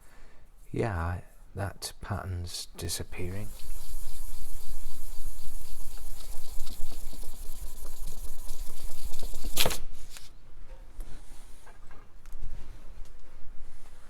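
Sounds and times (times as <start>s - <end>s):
metal scraping on wet sandpaper: 3.1s - 9.8s.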